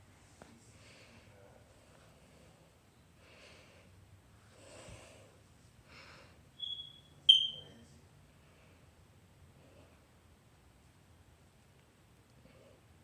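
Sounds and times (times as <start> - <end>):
faint breathy noises: 0.1 - 6.5, 8.2 - 10.2, 12.3 - 13.0
phone beeps: 6.6 - 7.6.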